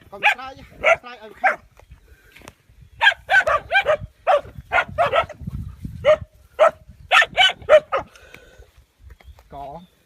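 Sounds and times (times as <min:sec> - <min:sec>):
dog barking: 0:00.2 - 0:01.6, 0:03.0 - 0:05.4, 0:06.0 - 0:08.1.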